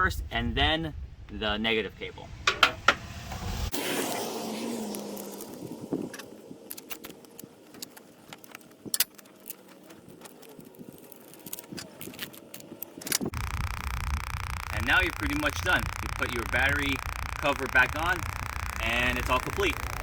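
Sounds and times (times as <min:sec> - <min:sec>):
metallic clicks of battery terminals: 0:06.1 - 0:20.0.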